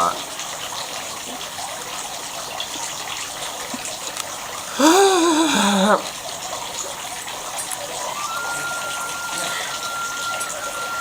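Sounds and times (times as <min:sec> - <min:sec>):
person crying out: 0:04.8 - 0:06.0
restaurant noise: 0:04.8 - 0:06.0.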